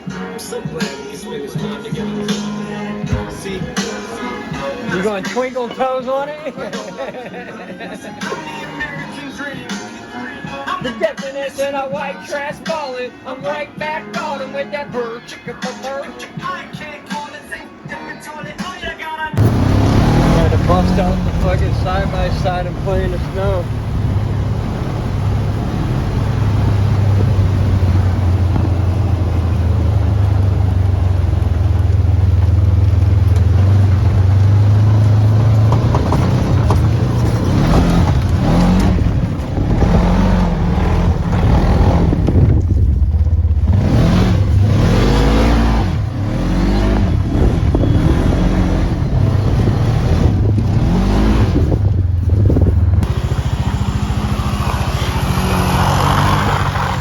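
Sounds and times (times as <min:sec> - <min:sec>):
vehicle engine revving: 0:19.4 - 0:57.0.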